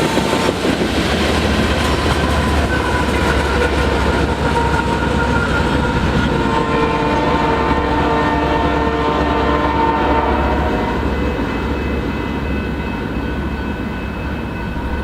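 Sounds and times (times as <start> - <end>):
freight train rumbling: 0.0 - 15.0
locomotive horn chord: 3.9 - 11.1.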